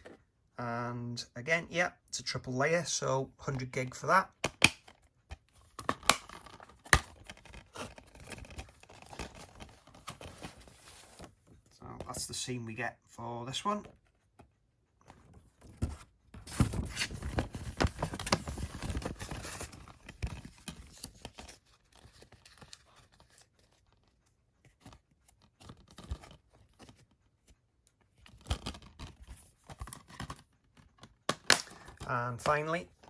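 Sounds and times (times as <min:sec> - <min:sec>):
plastic cases rustling and scraping: 0:04.8 - 0:12.4, 0:15.0 - 0:33.0.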